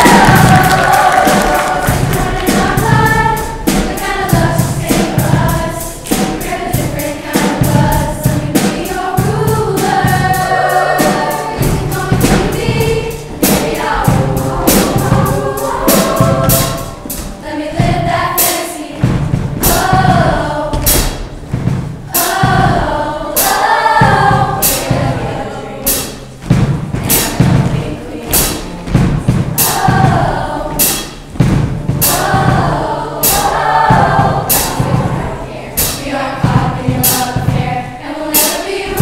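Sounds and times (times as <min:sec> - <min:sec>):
choir singing in harmony: 0:00.0 - 0:21.4, 0:22.0 - 0:39.0
accompaniment with steady beat: 0:00.0 - 0:39.0.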